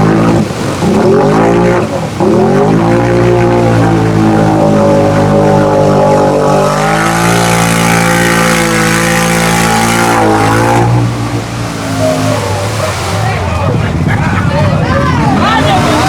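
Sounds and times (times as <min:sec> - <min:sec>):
off-road vehicle engine revving: 0:00.0 - 0:16.0.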